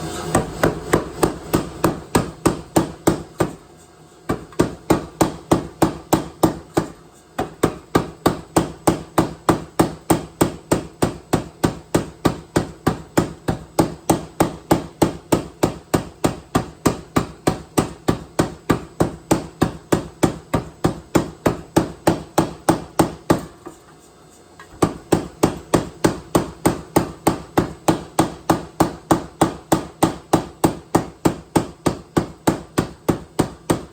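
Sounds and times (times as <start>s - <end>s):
power hammer striking hot metal: 0.0s - 3.6s.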